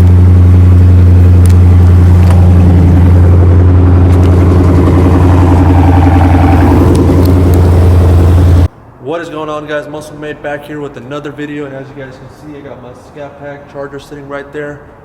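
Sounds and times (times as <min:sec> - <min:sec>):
car engine idling loudly: 0:00.0 - 0:08.7.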